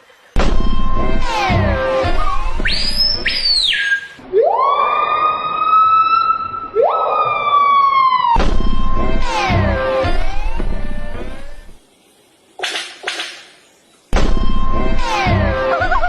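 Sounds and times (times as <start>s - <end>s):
siren-like wails: 0.5s - 3.6s, 4.2s - 11.8s, 14.4s - 16.0s
high swooping whistle: 0.6s - 9.5s.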